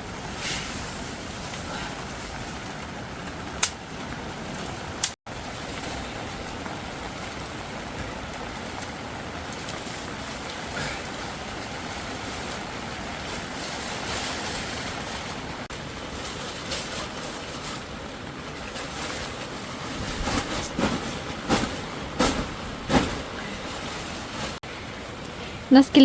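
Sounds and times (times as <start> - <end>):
heavy rain on a tent: 0.0 - 25.8
knocks and rustles of handling: 12.0 - 24.6.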